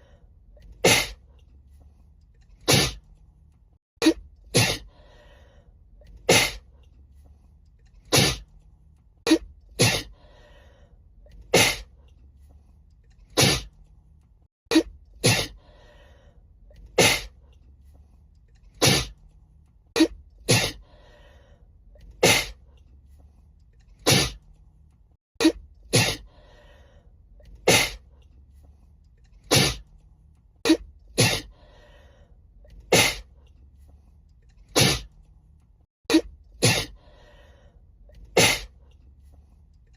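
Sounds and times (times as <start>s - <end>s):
woman sneezing: 4.0s - 4.9s, 9.3s - 10.1s, 14.7s - 15.6s, 20.5s - 20.8s, 22.2s - 22.6s, 25.4s - 26.2s, 30.7s - 31.5s, 32.9s - 33.3s, 34.8s - 35.1s, 36.1s - 37.0s, 38.4s - 38.7s.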